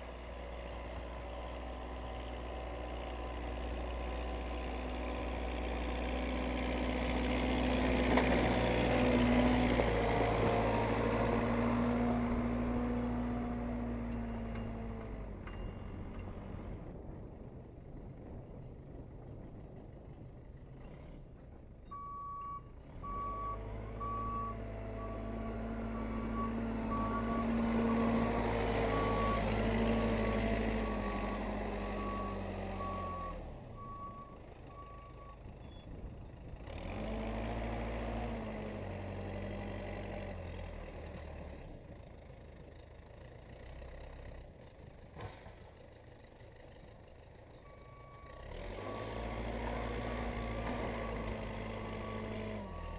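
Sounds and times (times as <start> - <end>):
backhoe engine revving: 0.0 - 16.8, 22.0 - 35.3, 36.6 - 41.8, 46.6 - 52.9.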